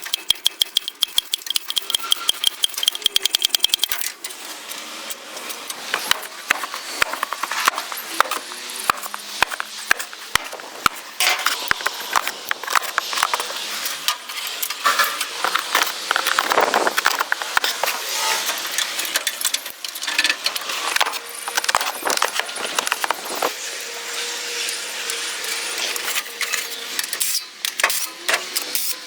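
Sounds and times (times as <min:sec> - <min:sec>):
hand tool clicking on metal: 0:00.0 - 0:04.1.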